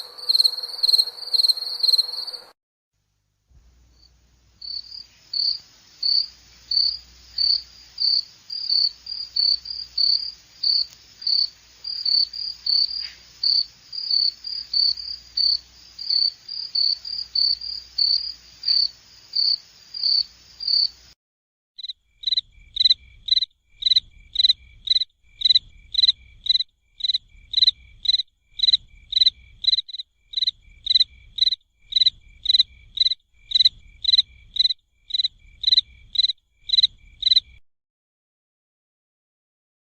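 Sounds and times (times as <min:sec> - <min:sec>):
crickets chirping: 0:00.0 - 0:02.6, 0:03.9 - 0:21.2, 0:21.8 - 0:37.6.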